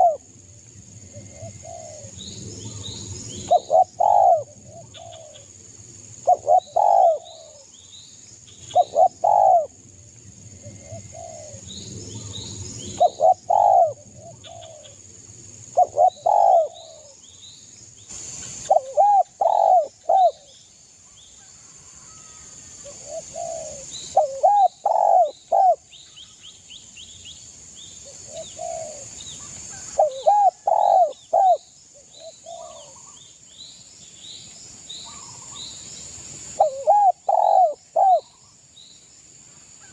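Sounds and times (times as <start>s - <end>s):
dove cooing: 0.0s - 0.2s, 1.1s - 5.4s, 6.2s - 7.6s, 8.7s - 9.7s, 10.8s - 11.6s, 13.0s - 15.0s, 15.8s - 17.2s, 18.7s - 20.5s, 22.9s - 25.9s, 28.3s - 33.2s, 36.6s - 38.4s
small birds chirping: 23.1s - 39.0s.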